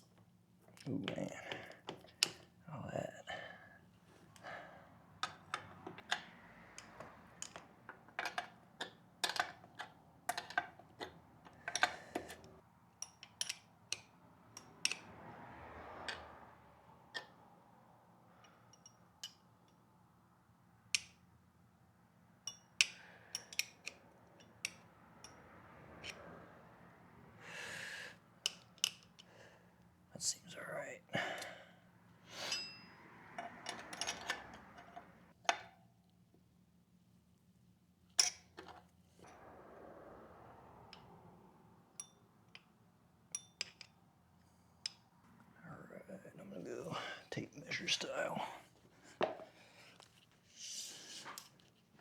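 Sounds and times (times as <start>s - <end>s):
metal tools clicking and clinking: 32.4s - 35.1s.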